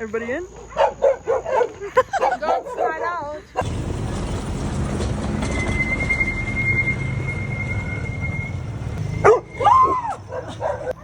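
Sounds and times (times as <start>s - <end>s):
vehicle engine and road rumble: 0.0s - 11.0s
thin high squeal: 5.4s - 10.0s.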